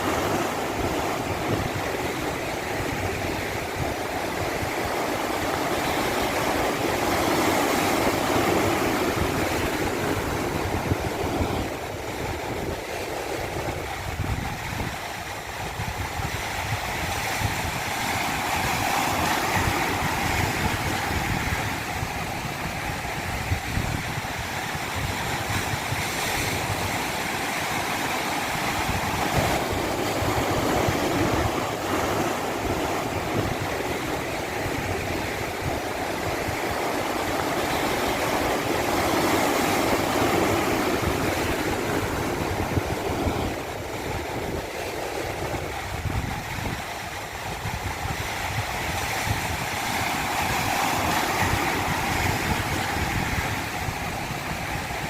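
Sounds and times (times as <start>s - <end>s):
rushing water: 0.0s - 55.0s.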